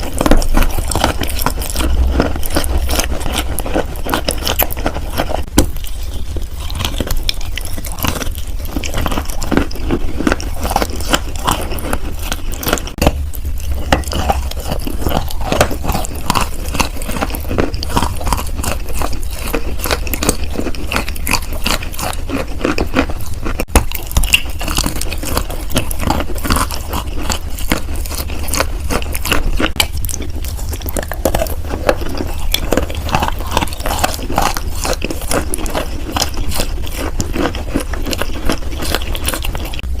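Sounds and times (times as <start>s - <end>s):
person chewing crunchy chalk: 0.0s - 40.0s
low rumble: 12.8s - 17.9s.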